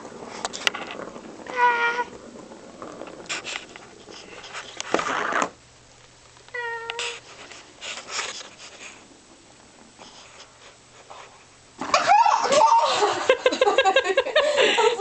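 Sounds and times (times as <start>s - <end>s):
cat meowing: 1.5s - 2.1s, 6.5s - 7.2s
faint scuffs and rustles: 6.9s - 9.1s.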